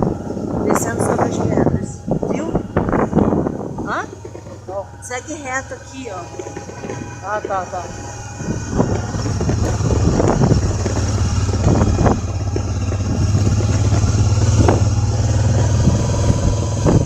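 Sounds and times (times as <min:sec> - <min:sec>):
vehicle engine droning: 0:00.0 - 0:17.0
knocks and clatter from bumps: 0:04.0 - 0:05.6, 0:06.2 - 0:17.0.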